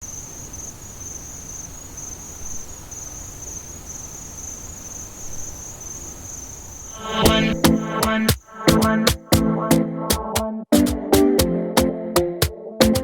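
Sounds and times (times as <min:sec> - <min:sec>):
insect trilling: 0:00.0 - 0:09.0.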